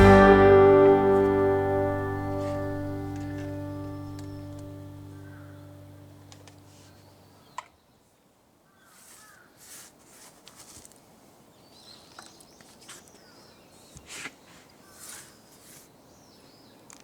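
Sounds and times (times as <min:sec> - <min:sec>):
music track: 0:00.0 - 0:06.2
bird calls: 0:03.6 - 0:05.8.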